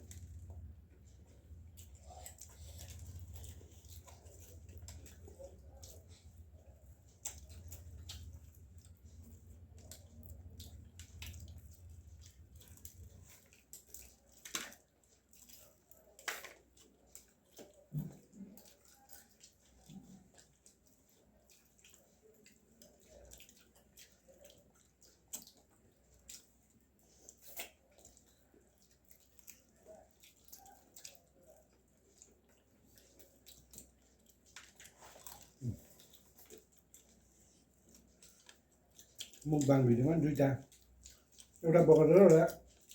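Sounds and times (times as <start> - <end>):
wet chewing sounds: 0.0 - 42.9
small clicks and crunches: 1.8 - 42.9.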